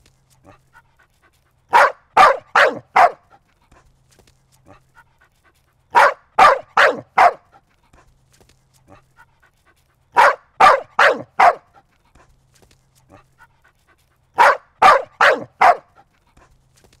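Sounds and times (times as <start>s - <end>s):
dog barking: 1.7s - 3.4s, 5.9s - 7.6s, 10.2s - 11.8s, 14.4s - 16.1s.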